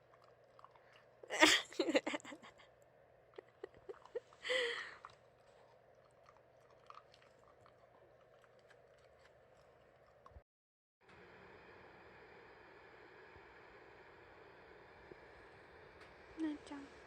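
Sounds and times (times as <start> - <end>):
dog crunching food: 0.0 - 1.2, 3.3 - 10.4.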